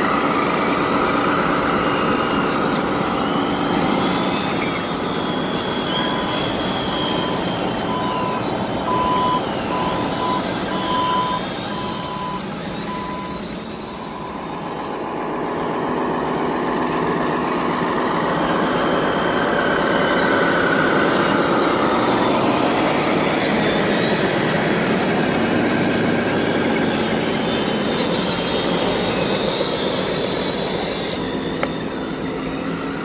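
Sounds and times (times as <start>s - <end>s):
reversing beeper: 0.0s - 15.3s
high motor whines: 0.0s - 33.0s
steady background noise: 0.0s - 33.0s.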